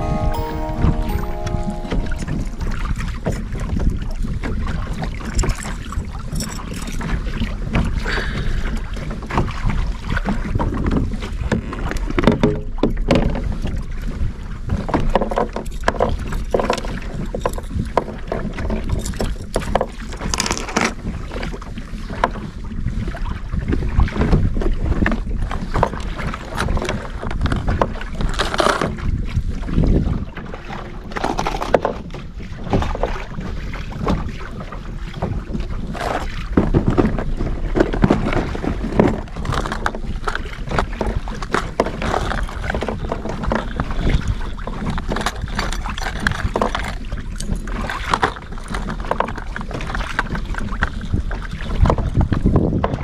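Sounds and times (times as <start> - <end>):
water lapping against hull: 2.5 - 53.0
wind buffeting microphone: 21.0 - 53.0.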